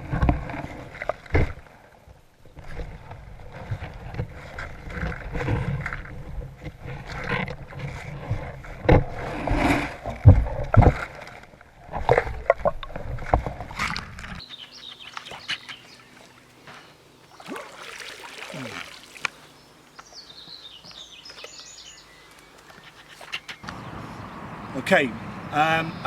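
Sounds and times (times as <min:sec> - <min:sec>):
muffled underwater rumbling and knocking: 0:00.0 - 0:14.4.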